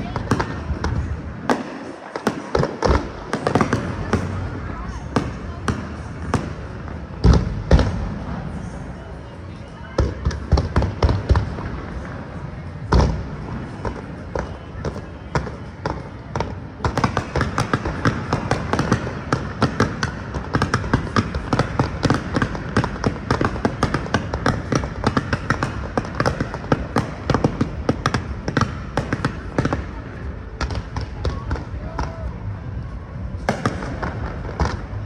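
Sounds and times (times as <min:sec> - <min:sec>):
fireworks crackling and banging: 0:00.0 - 0:35.0.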